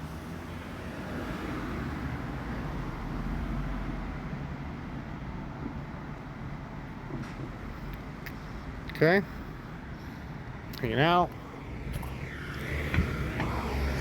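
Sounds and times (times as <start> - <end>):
road traffic rumble: 0.0 - 14.0
vehicle passing: 10.9 - 14.0.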